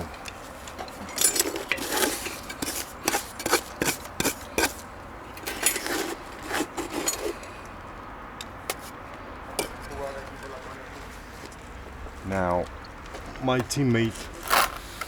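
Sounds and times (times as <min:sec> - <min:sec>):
hand tool scraping brick wall: 0:01.2 - 0:07.5, 0:14.1 - 0:15.0.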